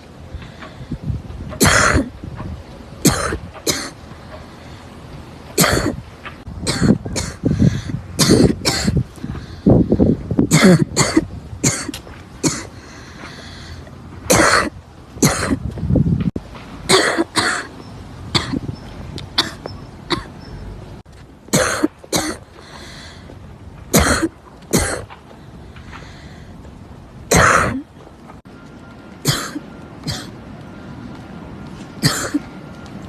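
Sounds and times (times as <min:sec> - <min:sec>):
girl coughing: 0:01.6 - 0:02.1, 0:03.0 - 0:04.0, 0:05.6 - 0:06.0, 0:06.7 - 0:07.5, 0:08.2 - 0:09.0, 0:10.5 - 0:12.7, 0:14.3 - 0:15.6, 0:16.9 - 0:17.7, 0:19.4 - 0:20.3, 0:21.5 - 0:22.4, 0:24.0 - 0:25.1, 0:27.3 - 0:27.8, 0:29.2 - 0:30.3, 0:32.0 - 0:32.4.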